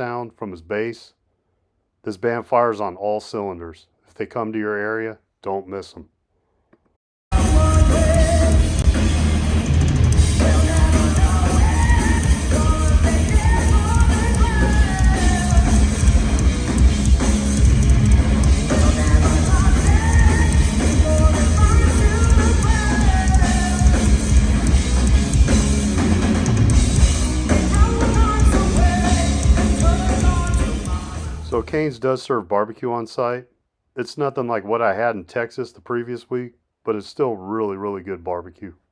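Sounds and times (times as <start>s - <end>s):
heavy metal band playing: 7.3s - 31.7s
woman singing: 7.4s - 8.9s, 10.3s - 16.1s, 18.7s - 24.2s, 27.5s - 31.5s.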